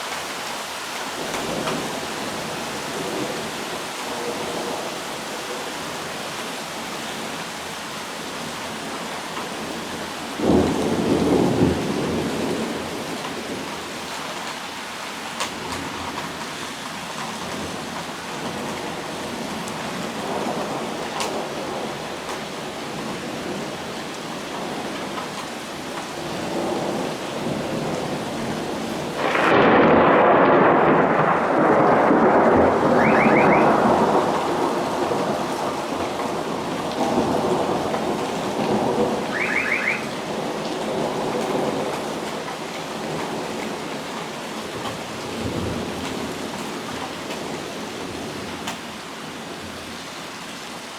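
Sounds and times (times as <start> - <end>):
steady rain hissing: 0.0 - 50.9
thunder: 10.4 - 13.6, 26.4 - 43.8.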